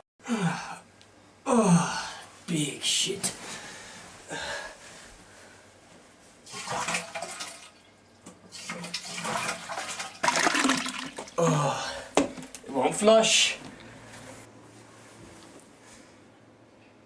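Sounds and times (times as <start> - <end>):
toilet flushing: 6.5 - 11.4.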